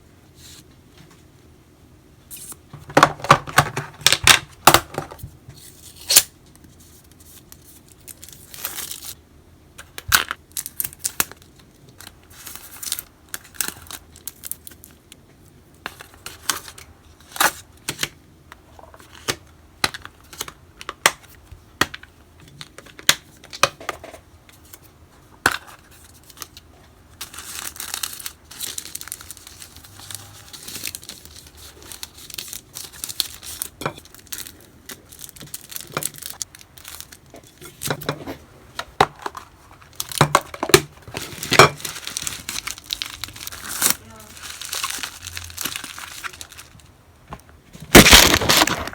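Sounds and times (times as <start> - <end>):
packaging crinkling and tearing: 7.0 - 9.2, 10.0 - 15.2, 25.6 - 38.2, 39.2 - 46.9, 47.9 - 48.9.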